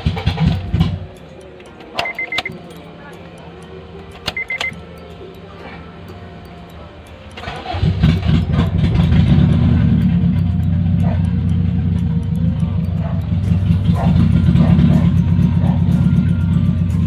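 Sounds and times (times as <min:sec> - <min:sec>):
high beep: 0:02.0 - 0:02.6, 0:04.3 - 0:04.8
car engine running without exhaust: 0:07.4 - 0:17.0.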